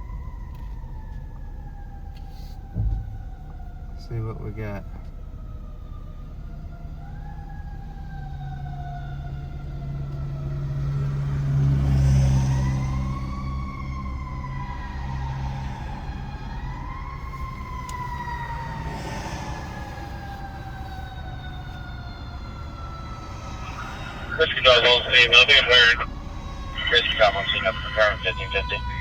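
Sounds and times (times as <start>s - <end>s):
fire truck siren wailing: 0.0s - 29.0s
heavy engine rumble: 2.3s - 5.5s, 14.8s - 29.0s.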